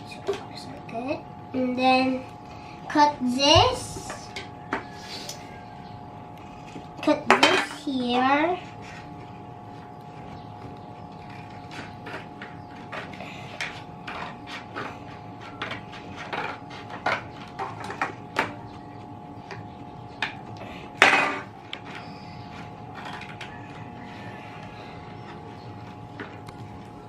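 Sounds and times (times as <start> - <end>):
faint steady hum: 0.0 - 27.0
scissors cutting cardboard: 11.2 - 17.9.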